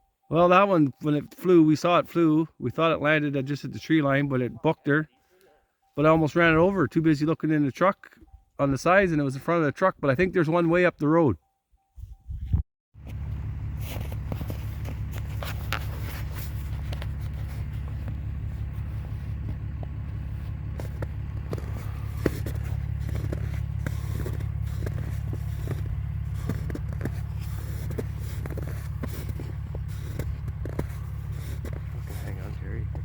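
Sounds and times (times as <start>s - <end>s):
truck engine rumble from cab: 13.0s - 33.0s.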